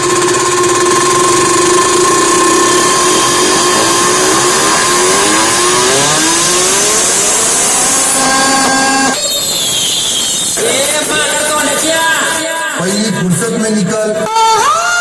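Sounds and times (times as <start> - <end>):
loud buzzing electronic tone: 0.0 - 12.6
short rising electronic sweeps: 0.8 - 11.5.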